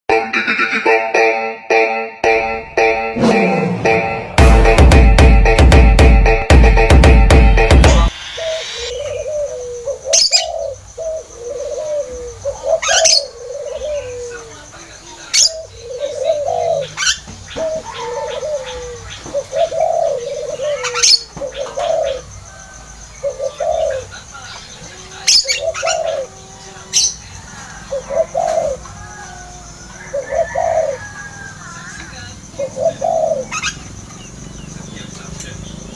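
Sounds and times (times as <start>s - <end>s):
loud music: 0.1s - 9.0s
dove cooing: 8.2s - 34.4s.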